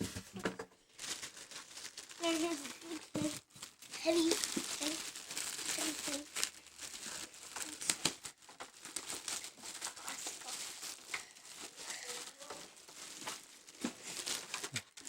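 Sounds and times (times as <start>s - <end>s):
packaging rustling and crinkling: 0.0s - 15.0s
small clicks and rattles: 7.4s - 13.5s.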